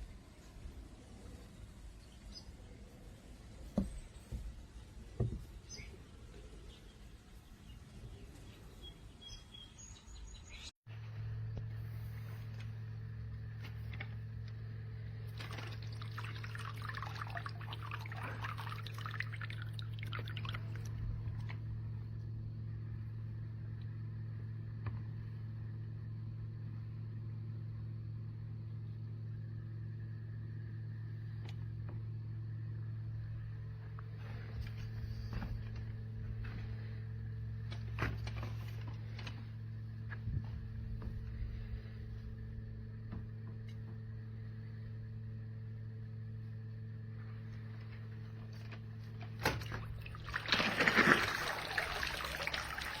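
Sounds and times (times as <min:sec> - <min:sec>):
steady low hum: 0:00.0 - 0:53.0
water pouring and splashing: 0:15.3 - 0:21.5, 0:49.4 - 0:53.0.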